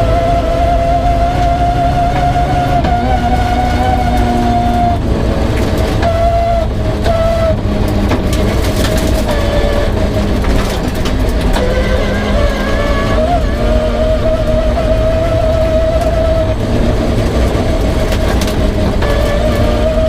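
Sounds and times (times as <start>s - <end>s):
rally car engine running hard: 0.0s - 20.0s
sharp clicks and knocks: 7.0s - 12.6s, 17.2s - 19.6s.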